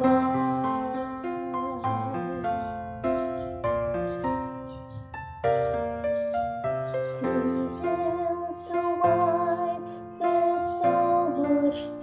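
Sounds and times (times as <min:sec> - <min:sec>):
woman singing with vibrato: 0:00.0 - 0:02.7, 0:07.2 - 0:12.0
piano accompaniment: 0:00.0 - 0:12.0.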